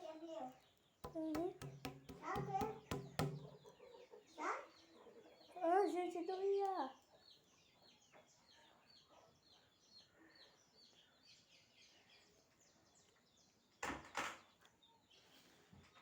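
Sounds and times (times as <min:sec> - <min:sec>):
small birds chirping: 0:00.0 - 0:16.0
sharp knocks: 0:01.0 - 0:03.6.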